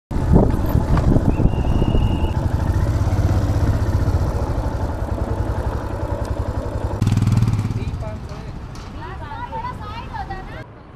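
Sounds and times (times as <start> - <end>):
small engine idling: 0.2 - 8.4.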